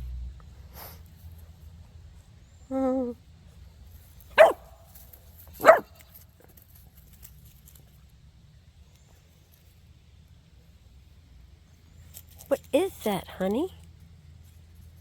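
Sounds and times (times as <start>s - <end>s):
dog barking: 4.4s - 4.8s, 5.6s - 6.0s.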